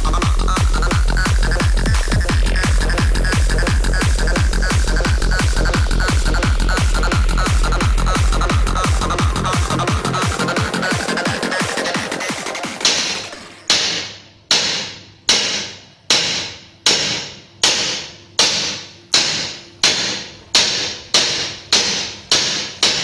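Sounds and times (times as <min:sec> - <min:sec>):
hammer striking metal pipe: 0:12.8 - 0:23.0.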